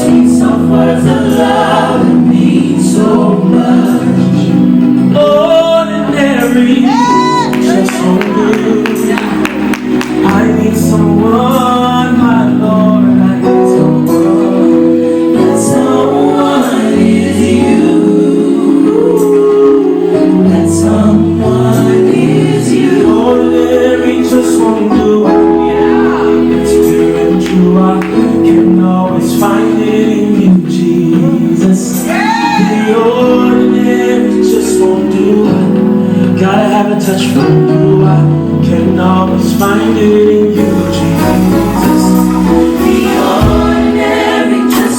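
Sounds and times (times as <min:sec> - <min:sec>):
band playing gospel music: 0:00.0 - 0:44.9
voices singing: 0:00.0 - 0:44.9.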